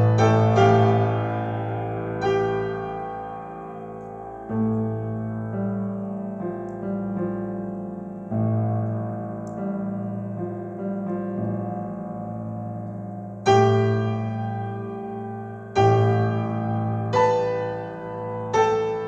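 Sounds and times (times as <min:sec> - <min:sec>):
slow solo piano: 0:00.0 - 0:19.0.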